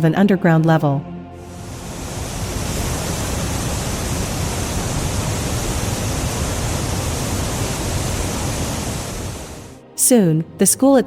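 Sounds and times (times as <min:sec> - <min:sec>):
floodwater rushing: 0:01.4 - 0:09.8.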